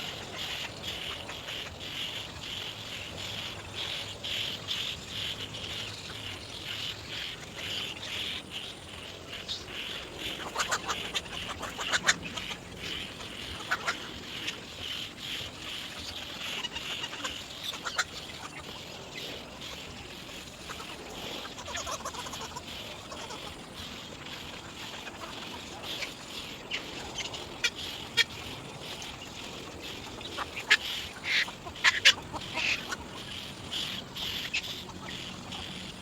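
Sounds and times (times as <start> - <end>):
egrets clucking calls: 29.8 - 36.0.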